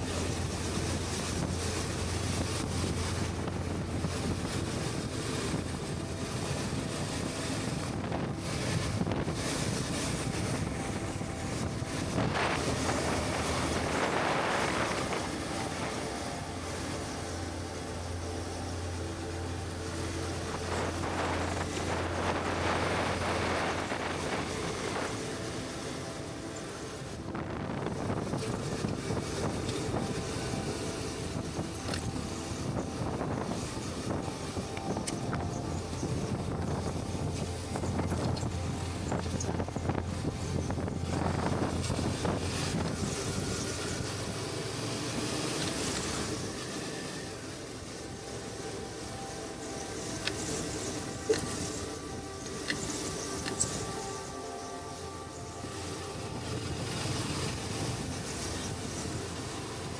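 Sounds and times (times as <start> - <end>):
motorcycle engine drone: 0.0 - 59.9
wind rushing over microphone: 0.0 - 59.9.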